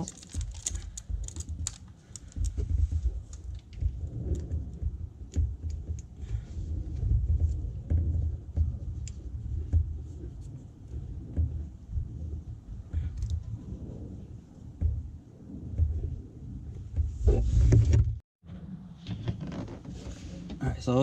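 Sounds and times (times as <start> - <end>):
small plastic clicks and rattles: 0.0 - 4.6
low handling rumble: 0.0 - 21.0.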